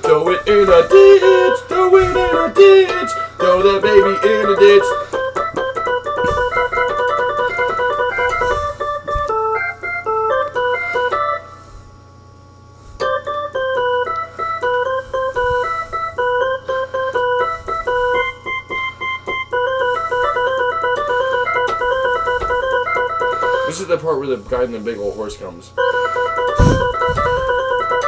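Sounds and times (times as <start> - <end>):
electronic organ playing chords: 0.0 - 11.7, 13.0 - 28.0.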